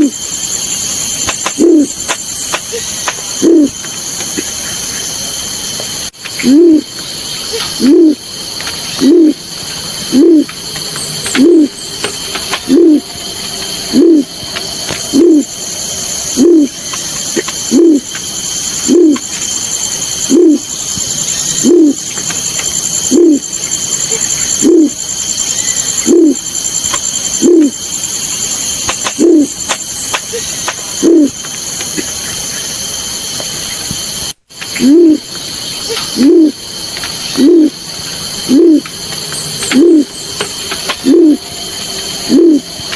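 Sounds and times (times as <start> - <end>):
steady high-pitched hiss: 0.0 - 42.9
low hooting bird coo: 1.4 - 5.0, 6.4 - 8.3, 8.9 - 10.6, 11.2 - 11.8, 12.5 - 13.1, 13.8 - 15.6, 16.3 - 18.2, 18.8 - 19.3, 20.2 - 20.8, 21.4 - 22.1, 23.0 - 26.6, 27.2 - 27.9, 29.0 - 29.6, 30.3 - 32.7, 34.7 - 35.3, 35.9 - 36.6, 37.3 - 37.8, 38.4 - 39.0, 39.6 - 40.2, 40.9 - 41.5, 42.2 - 42.8.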